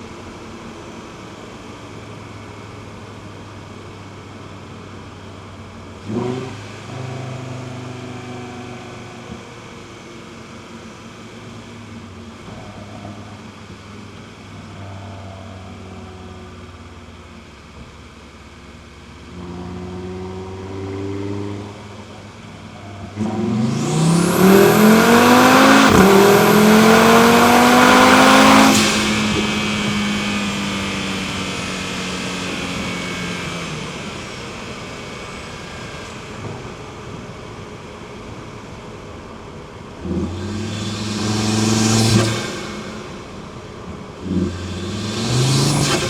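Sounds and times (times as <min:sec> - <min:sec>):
car engine accelerating hard: 0:00.0 - 0:46.0
engine throttle blips: 0:21.6 - 0:46.0.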